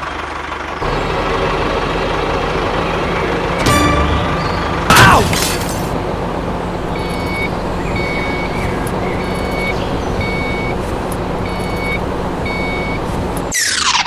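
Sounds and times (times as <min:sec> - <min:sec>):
steady engine noise: 0:00.0 - 0:14.0
reversing alarm beeping: 0:07.0 - 0:08.6, 0:09.2 - 0:10.8, 0:11.4 - 0:13.0.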